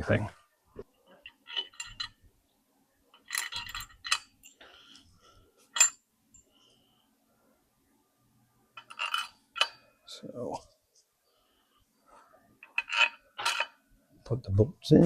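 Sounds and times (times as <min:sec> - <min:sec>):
metallic clinks of bolts: 0:01.2 - 0:02.2, 0:03.2 - 0:04.6, 0:05.7 - 0:06.4.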